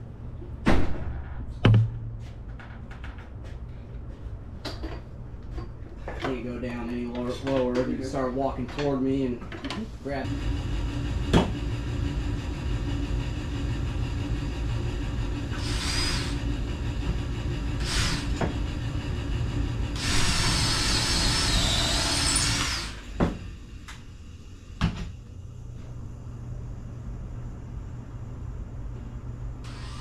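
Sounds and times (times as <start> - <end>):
low mechanical hum: 0.0 - 30.0
sharp knocks: 0.8 - 2.6.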